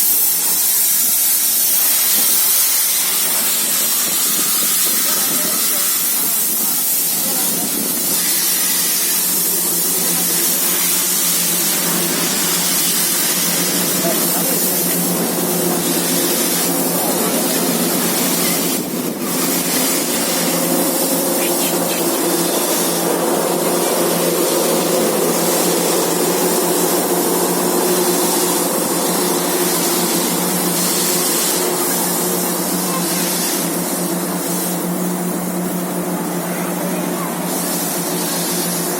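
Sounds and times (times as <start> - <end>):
steam locomotive hissing: 0.0 - 38.9
steady low hum: 6.2 - 36.4.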